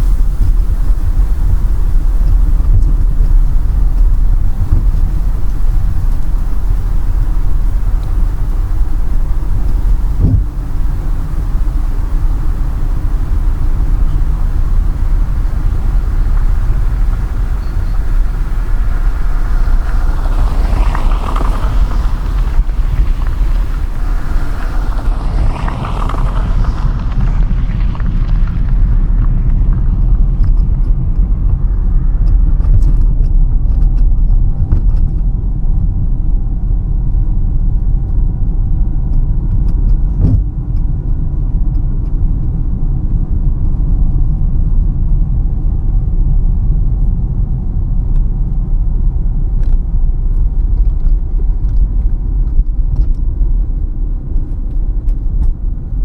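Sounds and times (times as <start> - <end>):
rushing hiss: 0.0 - 33.0
car engine and tyre rumble: 0.0 - 56.0.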